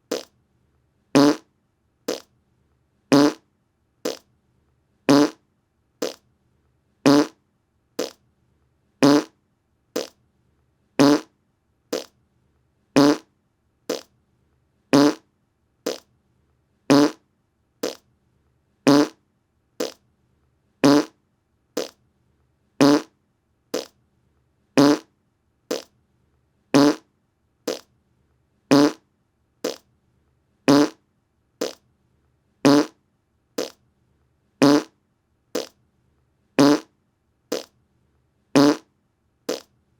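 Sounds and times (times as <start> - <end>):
fart sound effect: 0.1 - 0.3, 1.2 - 1.4, 2.1 - 2.3, 3.1 - 3.4, 5.1 - 5.4, 7.1 - 7.4, 8.0 - 8.2, 9.0 - 9.3, 10.0 - 10.2, 11.0 - 11.3, 11.9 - 12.1, 13.0 - 13.3, 15.0 - 15.2, 16.9 - 17.2, 17.8 - 18.0, 18.9 - 19.2, 19.8 - 20.0, 20.8 - 21.2, 22.8 - 23.1, 24.8 - 25.1, 25.7 - 25.9, 26.8 - 27.0, 27.7 - 27.9, 28.7 - 29.0, 29.6 - 29.8, 30.7 - 31.0, 32.7 - 33.0, 34.6 - 34.9, 35.6 - 35.8, 36.6 - 36.9, 37.5 - 37.7, 38.6 - 38.9, 39.5 - 39.7.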